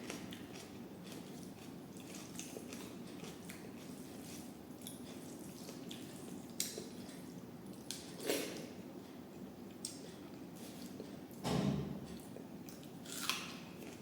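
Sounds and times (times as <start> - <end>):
wet chewing and squelches: 0.0 - 8.7.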